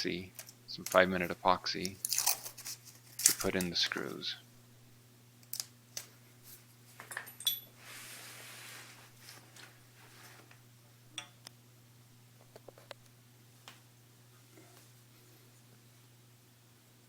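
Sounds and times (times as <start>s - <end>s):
steady low hum: 0.0s - 17.0s
soft hiss: 6.0s - 16.9s
metal parts and tools clinking: 7.0s - 7.7s.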